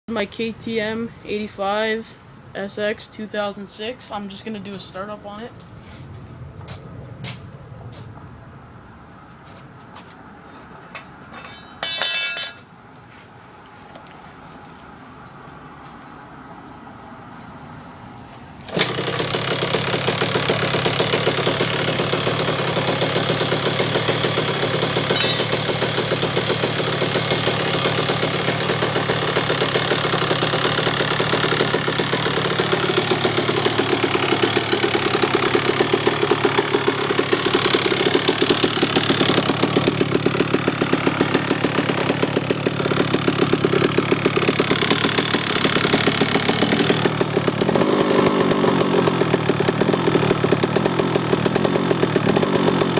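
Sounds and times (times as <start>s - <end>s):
two-stroke engine running: 18.6s - 52.9s.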